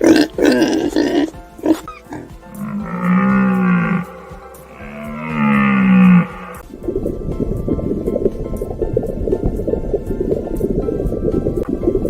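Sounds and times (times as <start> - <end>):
animal grunts: 0.0 - 6.6
cow mooing: 0.0 - 6.6.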